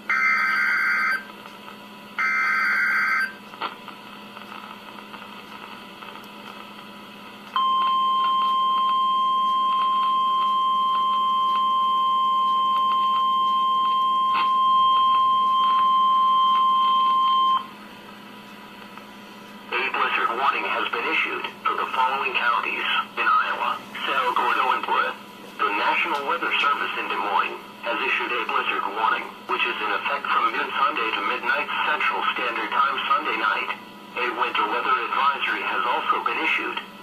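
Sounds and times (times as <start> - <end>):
steady warning alarm tone: 0.0 - 1.3, 2.1 - 3.5, 7.6 - 17.8
radio hiss: 3.5 - 7.5, 18.6 - 37.0.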